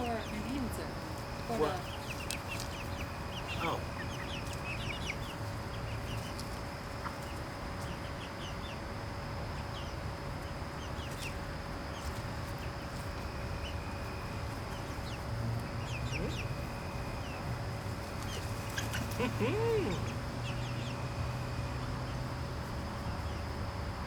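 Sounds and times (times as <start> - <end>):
chickens clucking and peeping: 0.0 - 24.0.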